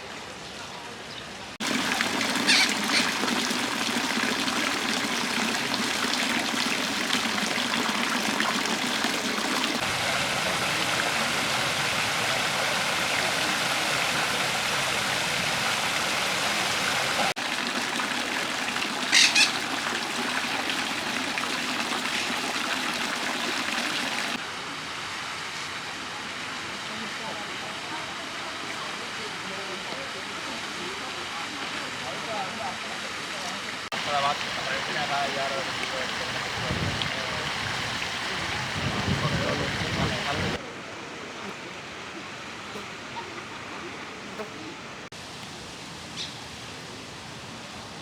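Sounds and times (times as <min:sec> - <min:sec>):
running water splashing: 0:01.6 - 0:24.4, 0:30.2 - 0:40.6.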